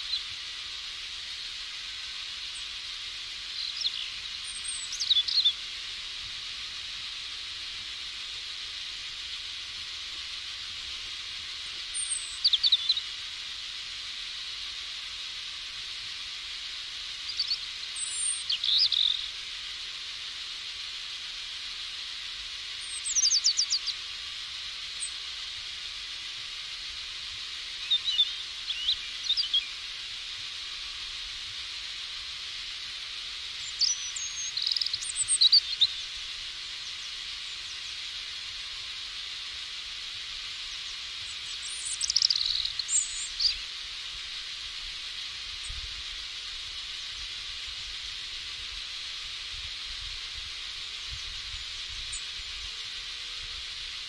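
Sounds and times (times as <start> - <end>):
light rain hissing: 0.0 - 54.0
songbirds chirping: 3.4 - 5.6, 17.2 - 19.4, 27.7 - 29.8, 33.6 - 38.0, 40.6 - 43.7.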